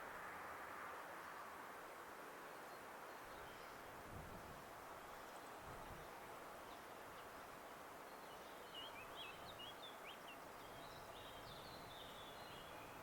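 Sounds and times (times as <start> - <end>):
low background hiss: 0.0 - 13.0.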